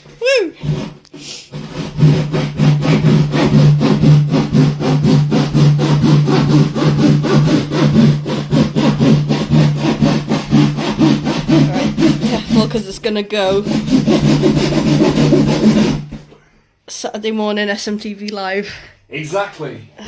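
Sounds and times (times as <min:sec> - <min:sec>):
handsaw cutting through board: 0:00.6 - 0:16.3.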